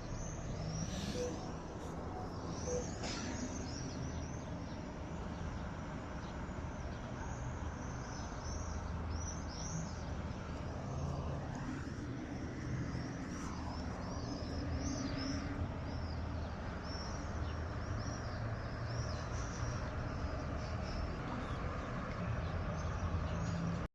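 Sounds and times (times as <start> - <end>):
swifts screaming: 0.0 - 4.6
low rumble of vehicles: 0.0 - 23.9.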